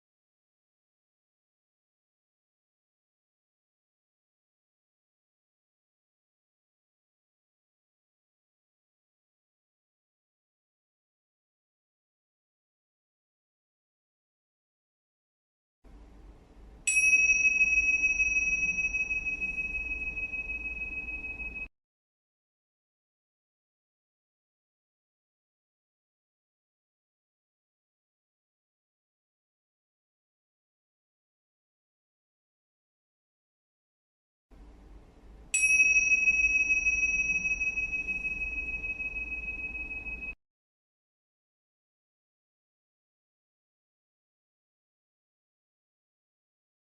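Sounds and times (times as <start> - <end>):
faint room noise: 15.9 - 21.7, 34.5 - 40.4
small bell ringing: 16.9 - 21.7, 35.5 - 40.4.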